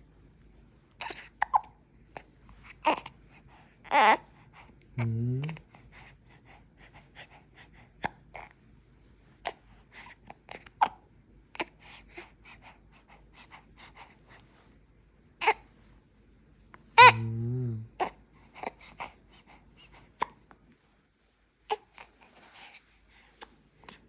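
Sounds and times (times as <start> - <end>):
baby breathing softly: 2.1 - 4.8, 5.6 - 8.1, 11.6 - 14.7, 18.0 - 20.2, 21.7 - 24.0
baby hiccupping: 17.0 - 18.2.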